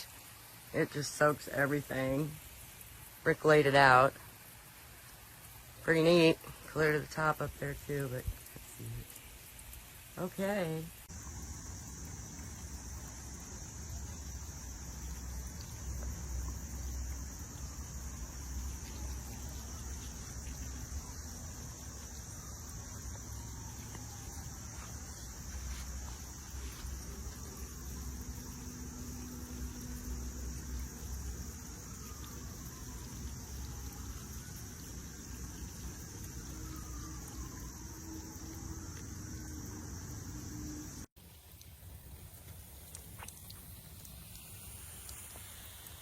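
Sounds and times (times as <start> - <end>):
insects chirring: 0.0 - 46.0
high even hiss: 42.4 - 46.0.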